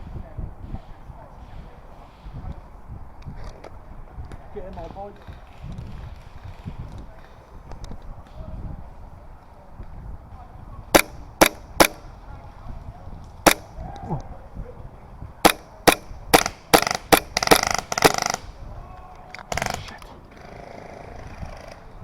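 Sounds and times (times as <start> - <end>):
airsoft rifle shots: 10.9 - 12.2, 13.4 - 13.8, 15.4 - 18.6, 19.5 - 20.2.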